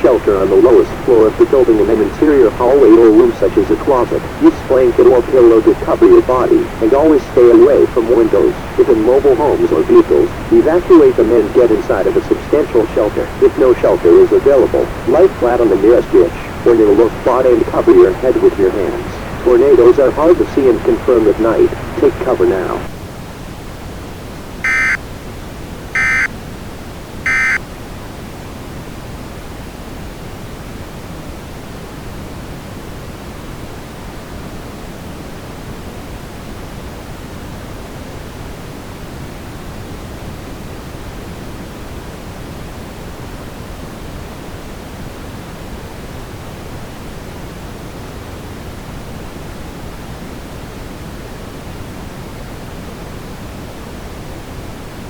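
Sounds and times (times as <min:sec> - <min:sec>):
static hiss: 0:00.0 - 0:55.0
warbling digital data tone: 0:24.6 - 0:25.0, 0:26.0 - 0:26.3, 0:27.3 - 0:27.6.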